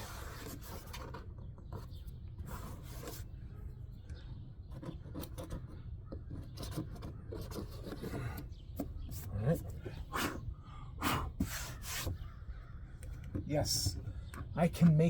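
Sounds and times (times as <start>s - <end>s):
scraping adhesive off car body: 11.4s - 12.4s.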